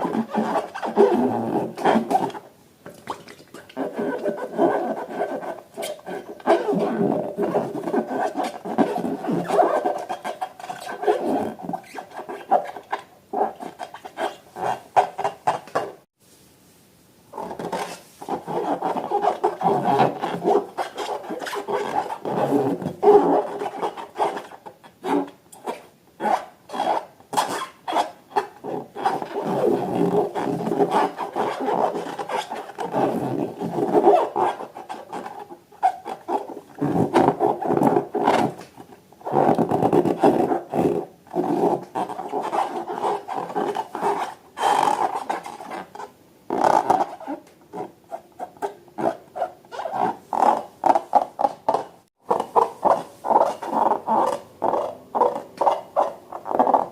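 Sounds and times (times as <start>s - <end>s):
balloons squeaking when rubbed: 0.0s - 2.4s, 3.1s - 15.9s, 17.3s - 38.6s, 39.2s - 56.9s.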